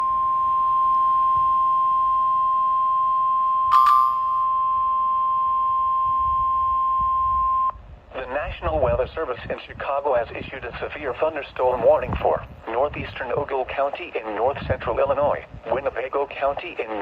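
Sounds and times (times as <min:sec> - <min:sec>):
steady alarm beep: 0:00.0 - 0:07.8.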